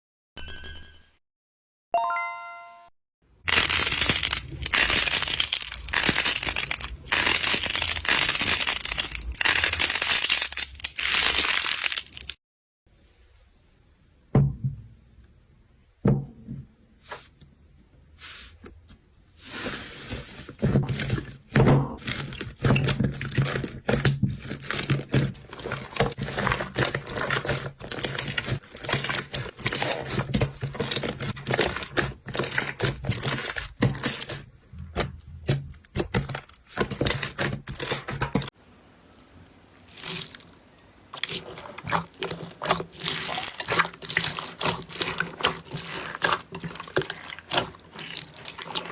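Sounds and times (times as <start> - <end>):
slime crackling and popping: 3.5 - 12.4, 39.9 - 48.9.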